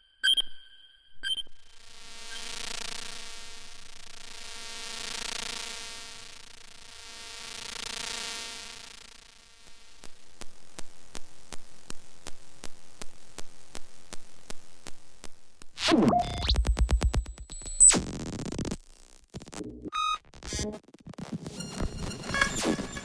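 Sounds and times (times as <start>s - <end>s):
stuttering buzz with high whine: 1.6s - 23.0s
stuttering electronic beeps: 15.8s - 18.8s, 19.4s - 23.0s
digital clicks ticking: 16.0s - 18.8s.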